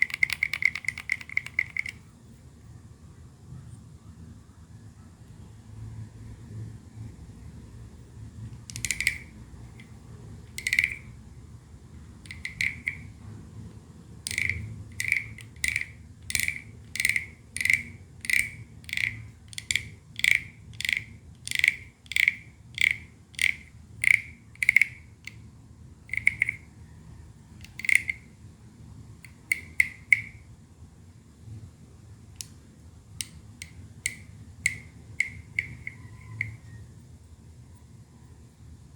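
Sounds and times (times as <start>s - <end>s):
wooden frog scraper croaking: 10.5s - 11.1s, 12.3s - 13.1s, 14.3s - 25.0s.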